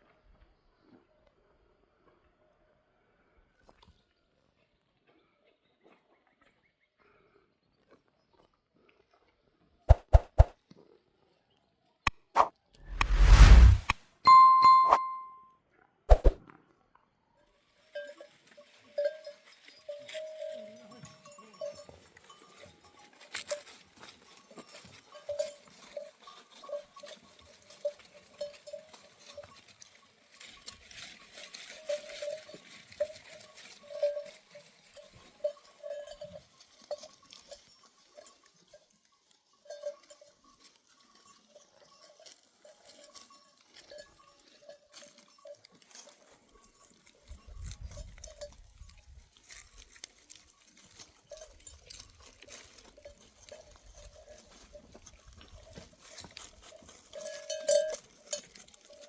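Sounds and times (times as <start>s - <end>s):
animal bells clanking: 14.3s - 15.4s, 17.6s - 59.0s.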